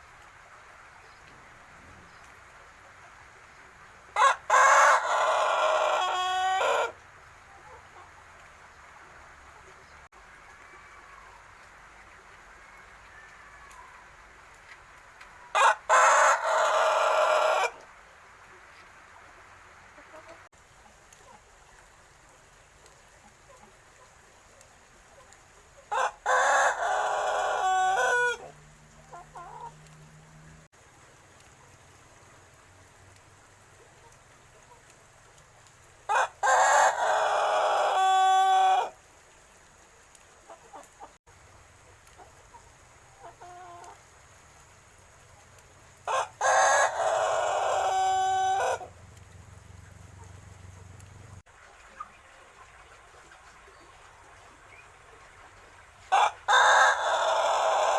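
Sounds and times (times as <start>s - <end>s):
rooster crowing: 4.2s - 7.0s, 15.5s - 17.8s, 25.9s - 28.6s, 36.1s - 39.0s, 46.1s - 48.9s, 56.1s - 57.9s.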